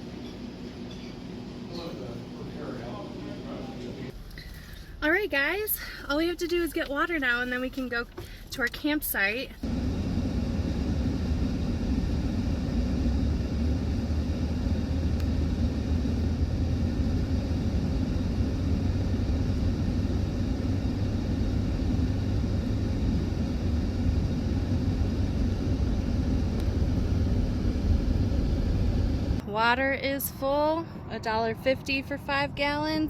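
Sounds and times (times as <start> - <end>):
engine and road rumble: 9.6 - 33.0.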